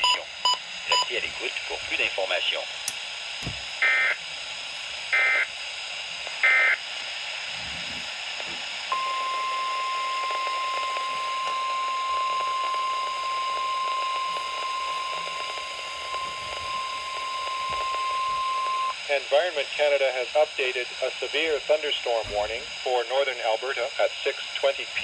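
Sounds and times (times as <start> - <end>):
steady warning alarm tone: 3.8 - 4.2, 5.1 - 5.5, 6.4 - 6.8, 8.9 - 19.1.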